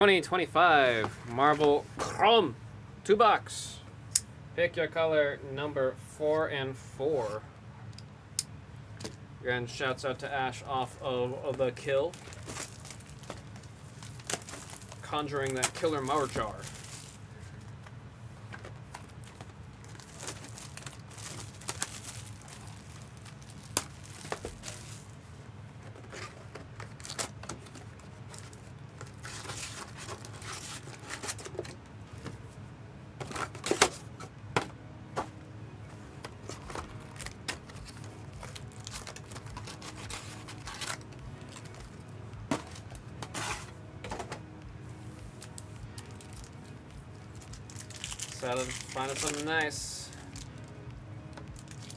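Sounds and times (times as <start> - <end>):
steady low hum: 0.0 - 51.9
cards rustling and clicking: 11.4 - 25.2, 25.8 - 32.5, 33.2 - 44.5, 47.3 - 50.7
wrappers tearing and crinkling: 11.9 - 17.4, 19.0 - 25.2, 25.9 - 31.8, 36.3 - 44.4, 45.4 - 51.9.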